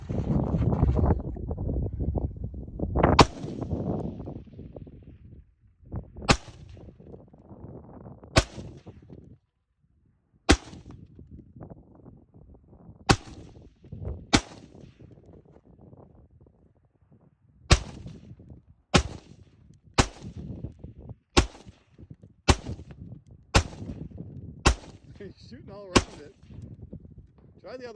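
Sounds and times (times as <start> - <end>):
rifle shots with echo: 3.2 - 3.9, 6.3 - 6.8, 8.4 - 9.0, 10.5 - 11.0, 13.1 - 13.6, 14.3 - 15.0, 17.7 - 18.2, 18.9 - 20.5, 21.4 - 21.9, 22.5 - 22.9, 23.6 - 25.2, 25.9 - 26.6.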